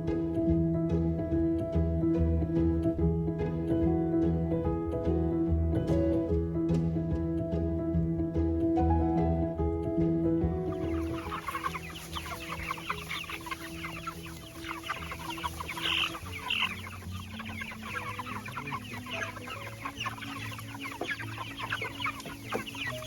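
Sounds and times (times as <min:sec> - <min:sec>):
chicks peeping and chirping: 0:10.4 - 0:23.0
loud high chick calls: 0:10.7 - 0:23.0.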